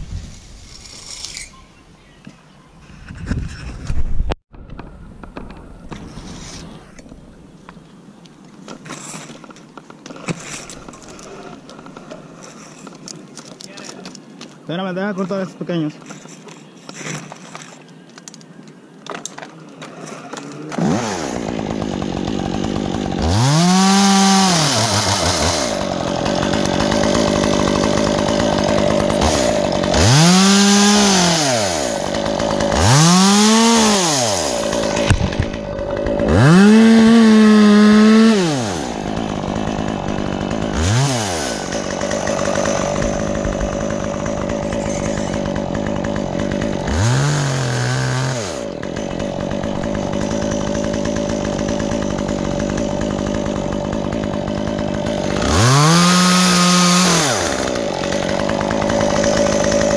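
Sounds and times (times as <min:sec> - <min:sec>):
chainsaw idling and revving: 0:10.1 - 0:13.6, 0:19.7 - 0:59.9.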